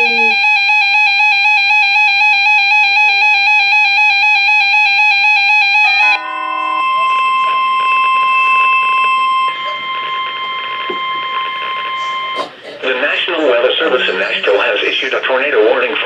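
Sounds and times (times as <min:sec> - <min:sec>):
steady alert tone: 0:00.0 - 0:00.4, 0:06.2 - 0:12.5
falling beeps: 0:00.0 - 0:01.3, 0:04.8 - 0:12.5
warbling electronic alarm: 0:00.0 - 0:12.5.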